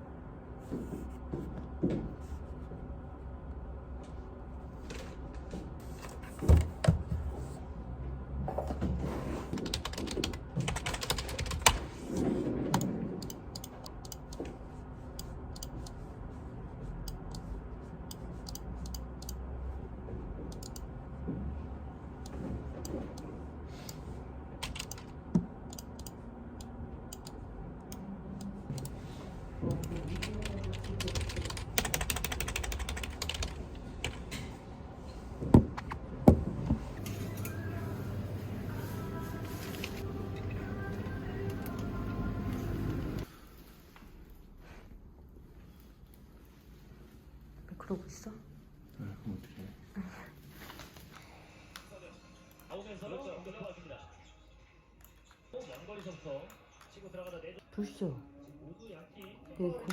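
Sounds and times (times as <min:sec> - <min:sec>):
low room hum: 0:00.0 - 0:59.9.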